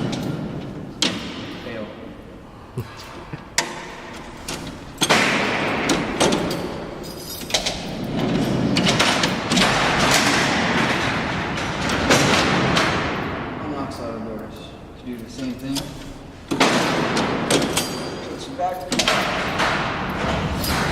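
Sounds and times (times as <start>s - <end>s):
sliding doors rumbling: 0.0s - 1.0s, 3.8s - 13.8s, 19.0s - 20.9s
loud bang of cell doors: 3.6s - 7.0s, 7.6s - 14.0s, 16.5s - 18.3s, 18.9s - 20.9s.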